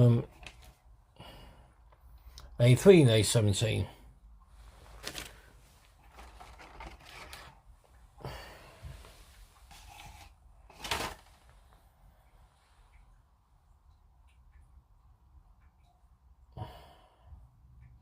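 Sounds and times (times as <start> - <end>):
plastic parts rubbing: 4.7 - 7.7, 9.6 - 11.6.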